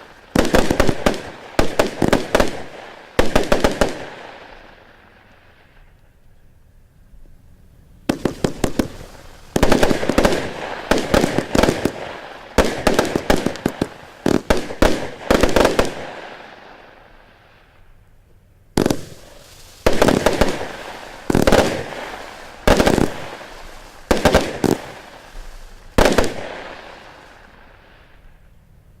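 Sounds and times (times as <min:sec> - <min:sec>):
firework cake firing sharp reports: 0:00.0 - 0:04.7, 0:08.0 - 0:16.8, 0:18.8 - 0:28.2.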